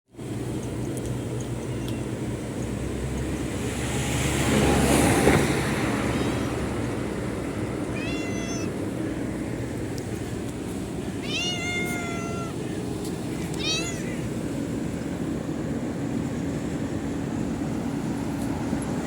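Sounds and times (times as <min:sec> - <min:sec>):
traffic noise: 0:00.1 - 0:19.0
cat meowing: 0:01.6 - 0:02.2, 0:07.8 - 0:08.8, 0:11.2 - 0:12.6, 0:13.4 - 0:14.3
vehicle passing: 0:02.3 - 0:19.0.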